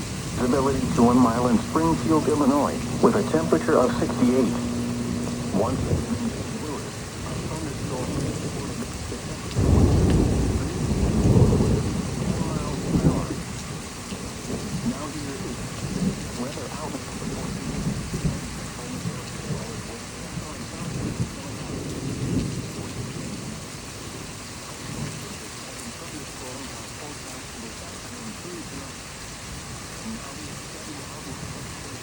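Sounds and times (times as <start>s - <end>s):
thunder crack: 0.0s - 16.6s
thunder rumbling: 0.0s - 24.3s
steady rain: 0.0s - 32.0s.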